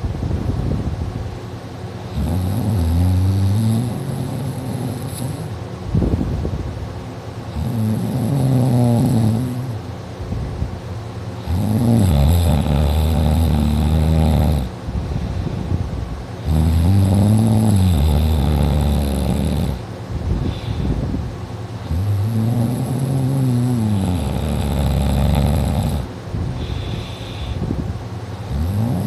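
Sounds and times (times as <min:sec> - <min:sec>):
person snoring loudly: 0:02.1 - 0:05.6, 0:07.5 - 0:09.8, 0:11.4 - 0:14.7, 0:16.4 - 0:19.8, 0:21.8 - 0:27.6, 0:28.5 - 0:29.0
quiet breaths: 0:18.3 - 0:21.1, 0:21.9 - 0:27.7.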